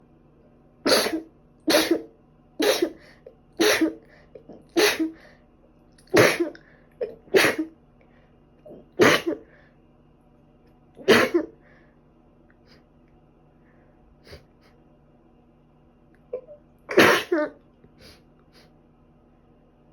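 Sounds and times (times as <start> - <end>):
runny nose sniffling: 0.9 - 4.0, 14.2 - 14.8, 18.0 - 18.7
person sneezing: 0.9 - 5.2, 6.1 - 7.8, 8.7 - 9.5, 11.0 - 11.6, 16.9 - 18.7.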